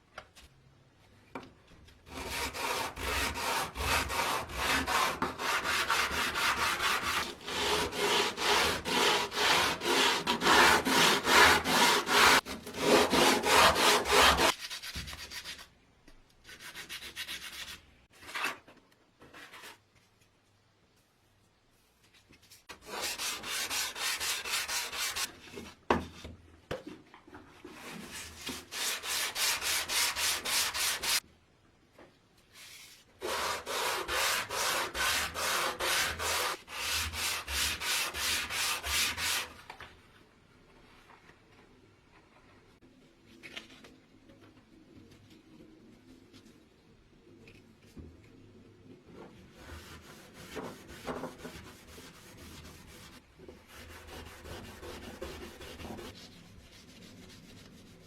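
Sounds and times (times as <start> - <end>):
sandpaper sanding wood: 2.1 - 15.6, 22.8 - 25.3, 28.1 - 31.2, 33.2 - 39.5, 49.6 - 58.0.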